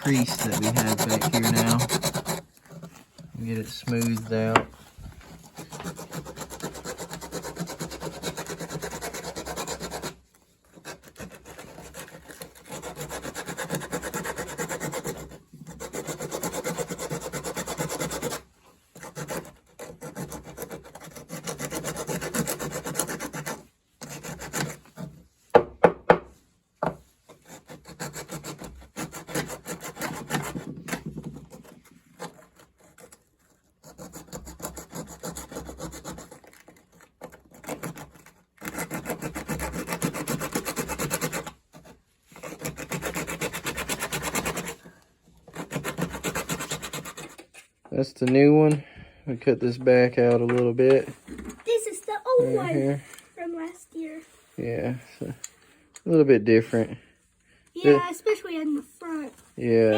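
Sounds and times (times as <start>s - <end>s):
sandpaper rubbing on wood: 0.0s - 2.5s, 5.2s - 25.1s, 27.2s - 33.1s, 33.8s - 44.9s, 45.5s - 47.4s.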